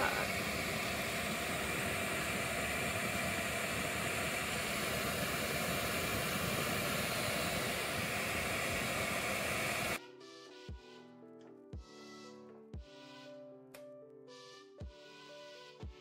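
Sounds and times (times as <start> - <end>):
gas stove burner hissing: 0.0 - 10.0.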